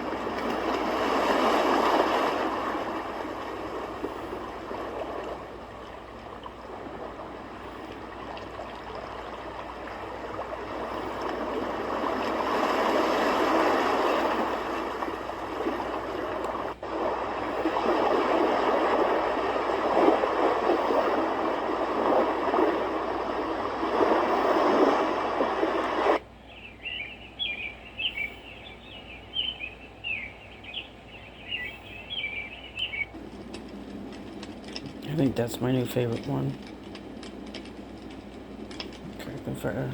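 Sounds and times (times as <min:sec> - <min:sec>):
rushing water: 0:00.0 - 0:26.2.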